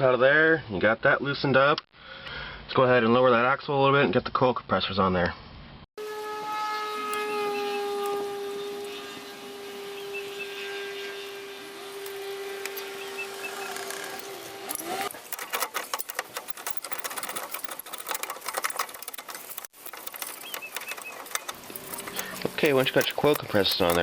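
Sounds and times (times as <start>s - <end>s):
metal tools clicking and rattling: 13.6s - 24.0s.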